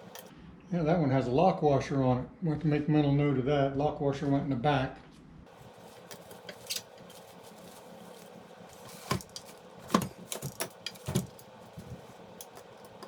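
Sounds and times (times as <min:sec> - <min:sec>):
small metal parts clinking: 0:05.9 - 0:13.0.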